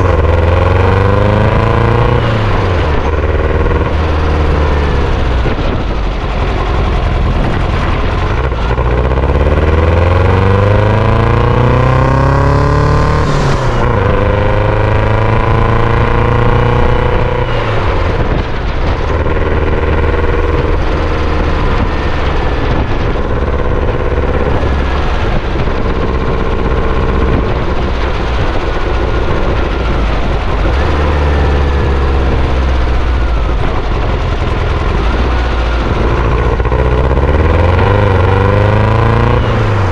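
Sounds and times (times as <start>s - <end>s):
buggy engine accelerating: 0.0s - 39.9s.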